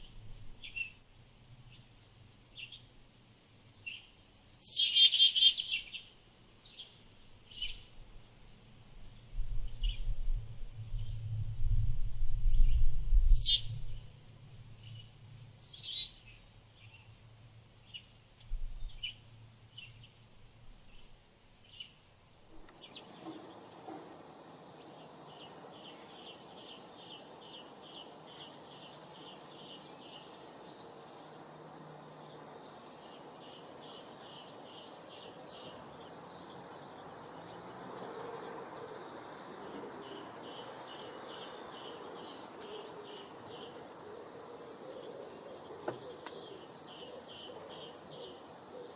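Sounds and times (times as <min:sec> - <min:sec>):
insect chirping: 0:00.0 - 0:23.8, 0:24.6 - 0:44.8
wild birds calling: 0:03.9 - 0:06.9, 0:13.3 - 0:14.1, 0:22.5 - 0:48.9
low rumble: 0:09.4 - 0:15.5.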